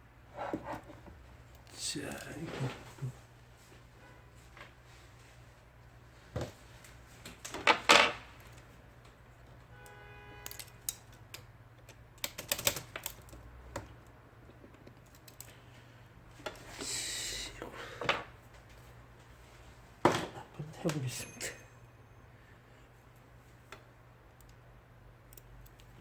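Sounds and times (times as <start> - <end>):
typewriter mechanism clicking: 10.5 - 13.4.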